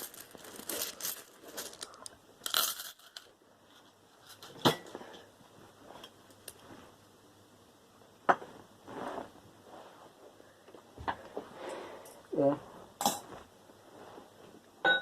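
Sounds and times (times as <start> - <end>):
rustling and crinkling objects: 0.0 - 7.0, 8.4 - 11.5.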